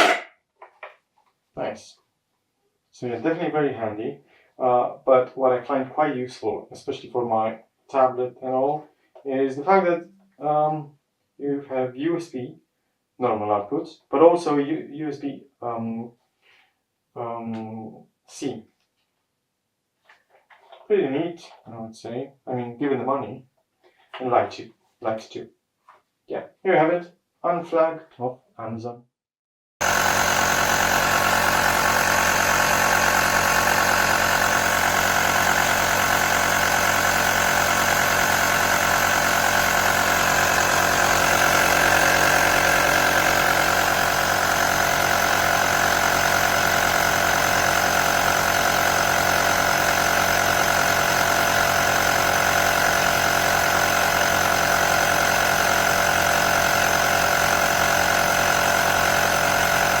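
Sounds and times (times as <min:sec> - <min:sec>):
motor humming steadily: 0:29.8 - 1:00.0.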